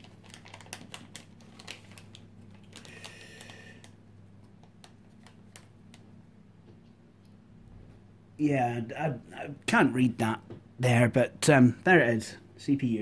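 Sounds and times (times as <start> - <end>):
packaging rustle: 0.0 - 6.0
steady low hum: 1.9 - 13.0.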